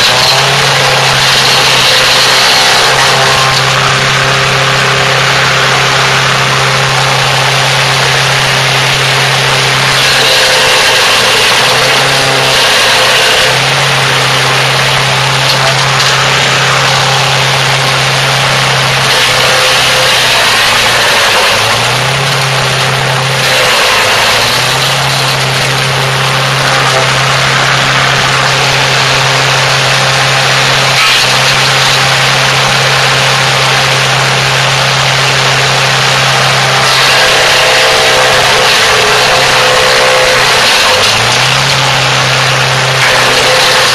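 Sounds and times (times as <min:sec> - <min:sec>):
lawn mower engine at full throttle: 0:00.0 - 0:43.9
mower grinding sticks: 0:00.0 - 0:43.9.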